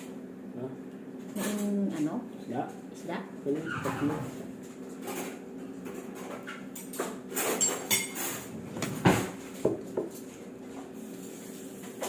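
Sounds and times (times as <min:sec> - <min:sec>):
steady low hum: 0:00.0 - 0:12.0
dishes and cutlery clinking: 0:06.1 - 0:08.5.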